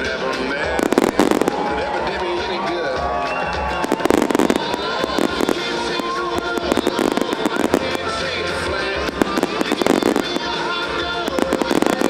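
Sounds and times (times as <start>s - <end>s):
fireworks crackling and popping: 0.0s - 12.0s
music playing: 0.0s - 12.0s.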